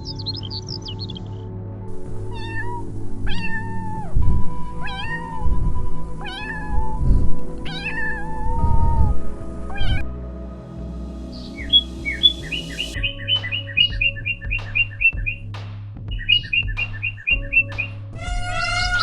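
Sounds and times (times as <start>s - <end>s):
background music: 0.0s - 19.0s
cat meowing: 2.3s - 4.1s, 6.2s - 7.0s, 7.7s - 8.8s, 18.3s - 19.0s.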